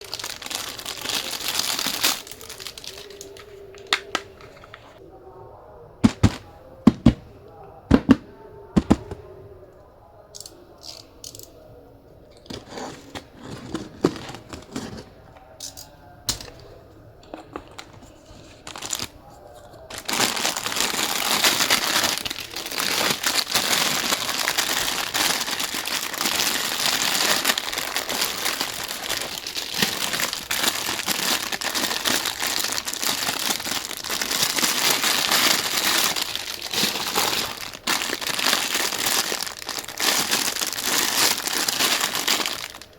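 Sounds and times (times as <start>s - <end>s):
loud crinkling and crumpling: 0.0s - 5.0s, 12.5s - 15.6s, 17.2s - 42.9s.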